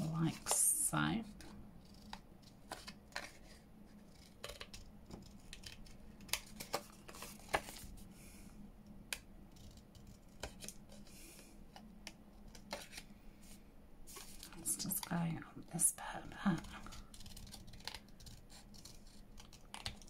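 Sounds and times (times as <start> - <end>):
scissors snipping paper: 16.5 - 20.0.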